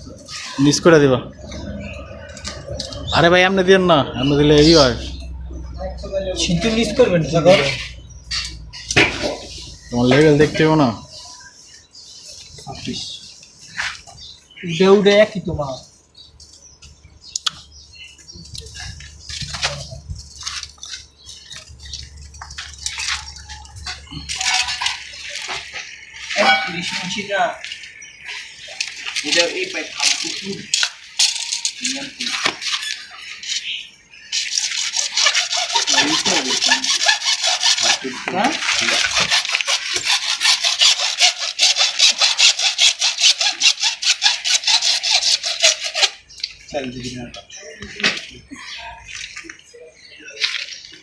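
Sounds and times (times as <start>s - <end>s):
scrapes and clinks of tools on pipe: 30.0s - 32.9s
hand saw cutting: 34.4s - 46.2s.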